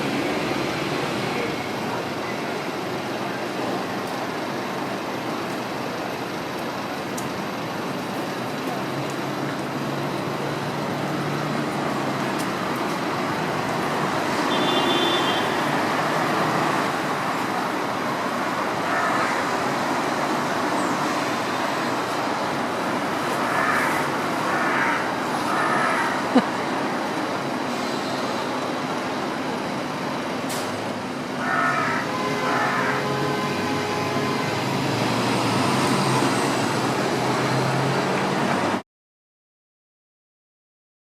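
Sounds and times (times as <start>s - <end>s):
city road traffic: 0.0s - 38.8s
crow cawing: 18.8s - 19.6s, 23.4s - 26.2s, 31.4s - 33.1s.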